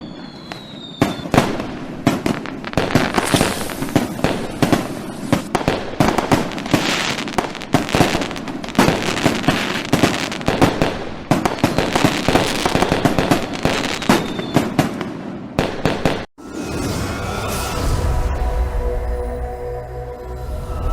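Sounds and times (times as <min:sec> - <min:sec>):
falling firework whistle: 0:00.0 - 0:01.6, 0:02.8 - 0:05.7, 0:11.6 - 0:13.3, 0:13.9 - 0:14.8
fireworks bangs and crackles: 0:00.0 - 0:16.8.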